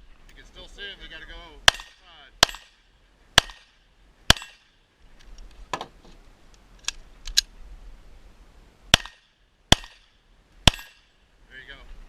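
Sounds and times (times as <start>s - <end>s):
gunshots: 1.7s - 2.8s, 3.4s - 4.6s, 8.9s - 10.0s, 10.7s - 11.0s
metallic clicks and handling noise: 6.8s - 7.5s.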